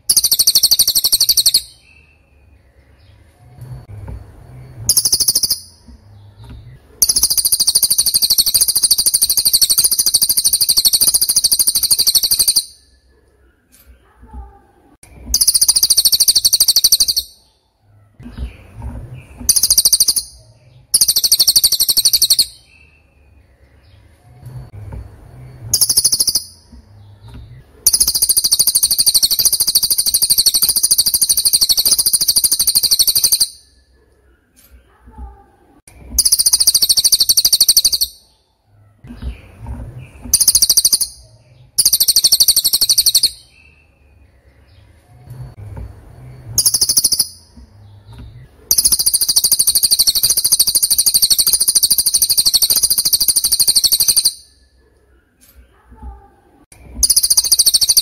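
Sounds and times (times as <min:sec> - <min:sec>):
bird high-pitched trill: 0:00.0 - 0:03.2, 0:04.5 - 0:13.1, 0:15.2 - 0:17.6, 0:19.4 - 0:24.8, 0:25.4 - 0:33.9, 0:36.1 - 0:38.4, 0:40.2 - 0:44.9, 0:46.2 - 0:54.8, 0:57.0 - 0:58.0.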